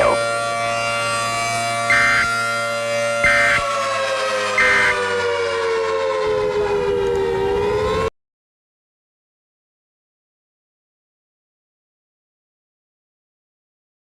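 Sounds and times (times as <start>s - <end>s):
tornado warning siren: 0.0s - 8.2s.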